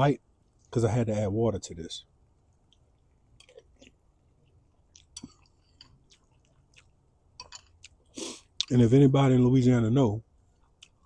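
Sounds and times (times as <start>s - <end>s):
person chewing food: 2.7s - 8.7s, 10.5s - 11.0s.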